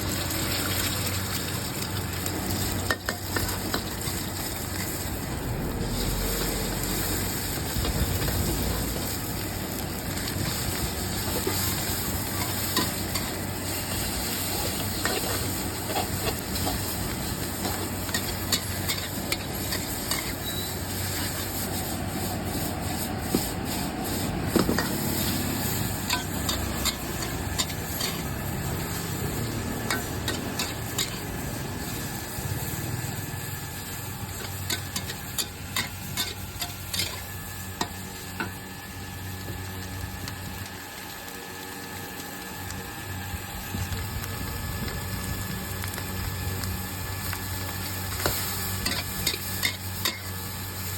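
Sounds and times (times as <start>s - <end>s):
food sizzling in a pan: 0.0s - 50.9s
metal utensil scraping a pan: 12.3s - 16.9s.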